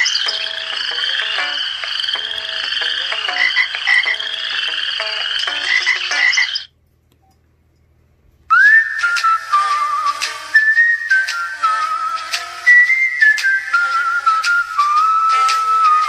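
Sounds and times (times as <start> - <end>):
rising whistle-like ringtone: 8.5 - 16.0.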